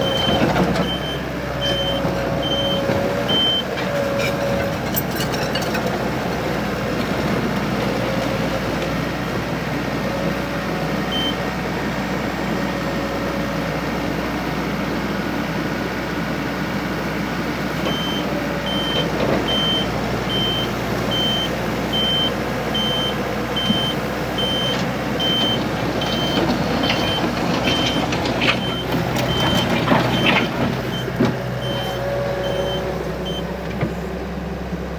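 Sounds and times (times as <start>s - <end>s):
reversing alarm beeps: 0.0s - 3.7s, 11.1s - 11.4s, 17.9s - 33.5s
diesel engine running: 0.0s - 34.9s.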